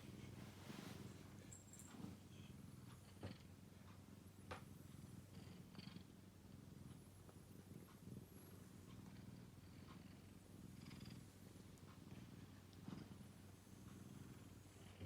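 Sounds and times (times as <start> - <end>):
cat purring: 0.0 - 15.0
faint ticks: 6.8 - 13.2.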